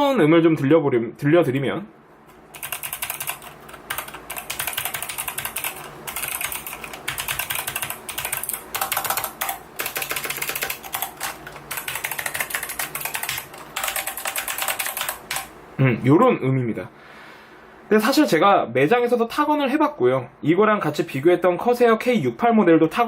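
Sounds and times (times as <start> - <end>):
mechanical keyboard typing: 2.5 - 15.5.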